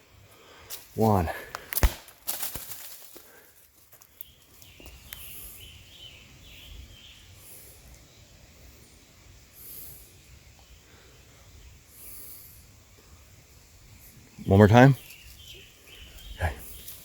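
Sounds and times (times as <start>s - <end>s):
faint bird chirps: 4.1s - 17.0s.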